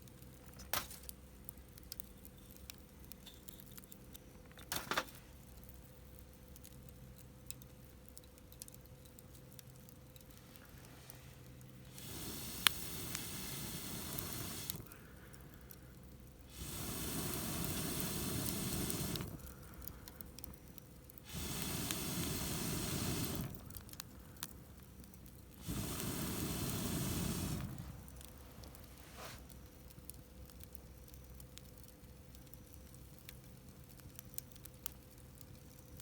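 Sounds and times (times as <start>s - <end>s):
burning wood cracking: 0.0s - 36.0s
fanned flames whooshing: 9.2s - 36.0s.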